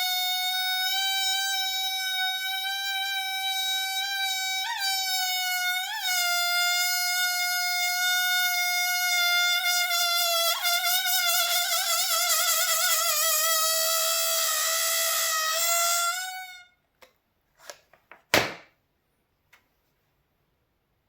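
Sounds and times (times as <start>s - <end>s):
balloon squealing: 0.0s - 16.8s.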